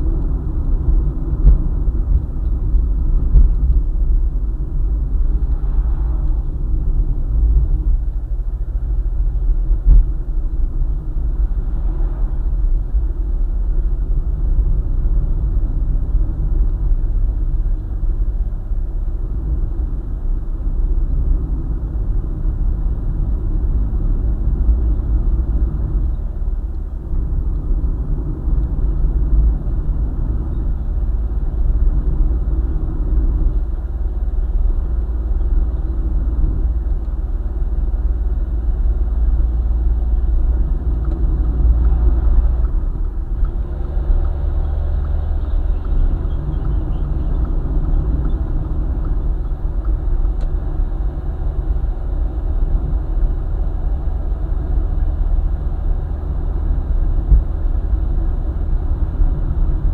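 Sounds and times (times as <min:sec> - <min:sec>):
tyres and engine rumble: 0:00.0 - 0:59.9.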